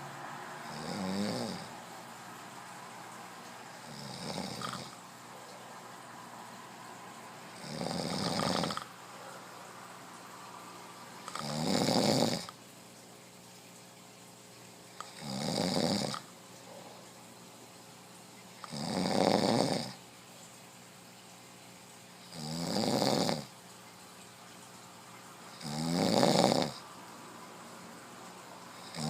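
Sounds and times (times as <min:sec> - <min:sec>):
man snoring: 0:00.6 - 0:01.7, 0:03.8 - 0:05.0, 0:07.6 - 0:08.9, 0:11.3 - 0:12.6, 0:15.0 - 0:16.2, 0:18.6 - 0:20.0, 0:22.3 - 0:23.5, 0:25.6 - 0:26.8, 0:28.8 - 0:29.0.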